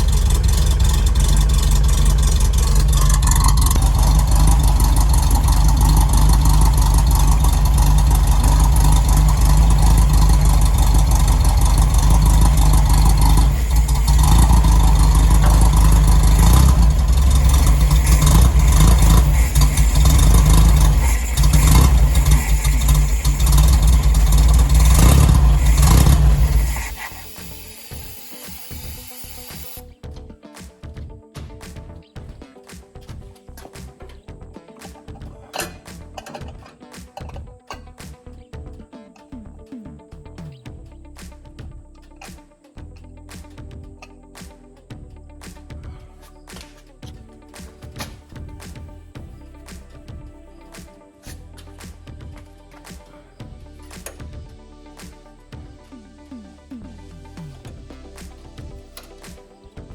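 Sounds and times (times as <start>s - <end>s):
car engine running unevenly: 0.0s - 27.4s.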